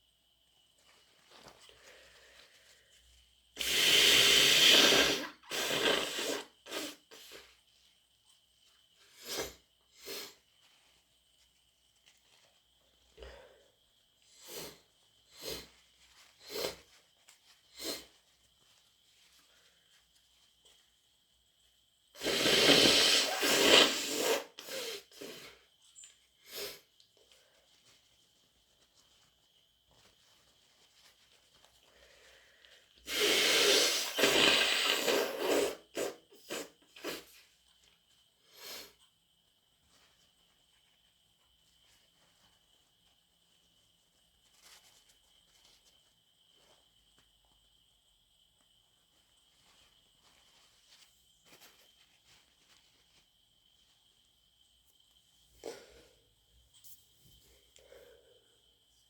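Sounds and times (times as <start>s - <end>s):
person sniffing congested nose: 3.6s - 7.5s, 9.1s - 10.4s, 14.3s - 17.0s, 17.6s - 18.2s, 22.2s - 25.7s, 26.4s - 27.0s, 31.9s - 37.5s, 38.4s - 39.0s, 55.5s - 56.3s, 57.4s - 58.7s
person sniffling: 22.2s - 25.6s, 55.6s - 56.3s.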